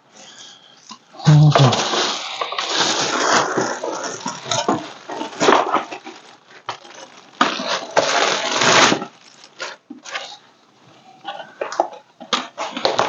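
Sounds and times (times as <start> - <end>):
plastic packaging tearing and crinkling: 1.2 - 10.6, 11.2 - 13.0.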